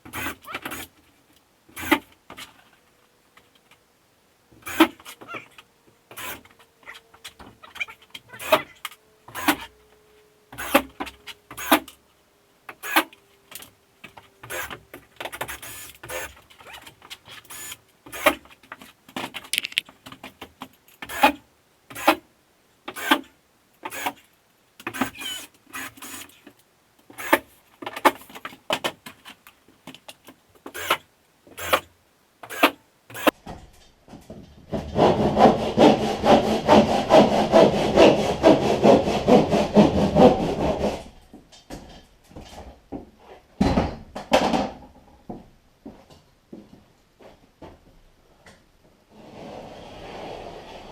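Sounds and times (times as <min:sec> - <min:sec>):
drywall panels and tools handled: 0:16.4 - 0:20.8, 0:33.4 - 0:35.3, 0:40.3 - 0:46.3.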